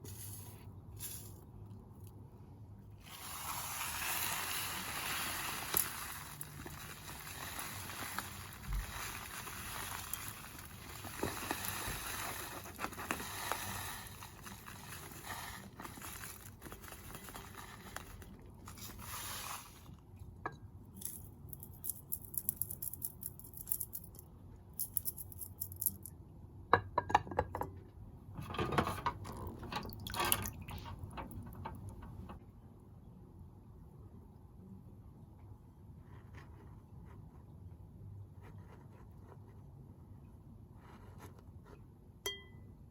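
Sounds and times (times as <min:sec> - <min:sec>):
water pouring: 0:03.1 - 0:18.2, 0:29.6 - 0:31.1.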